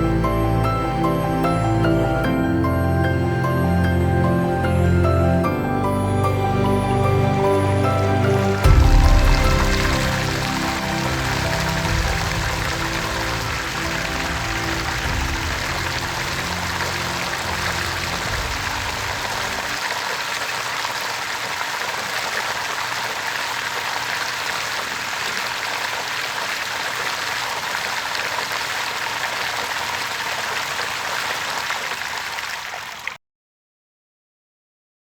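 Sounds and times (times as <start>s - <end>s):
rushing splashing water: 6.3s - 33.2s.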